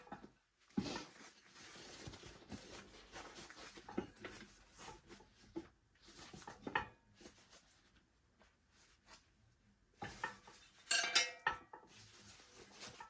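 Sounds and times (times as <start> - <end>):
rubber rustling and scraping: 0.7 - 9.4, 11.9 - 13.0.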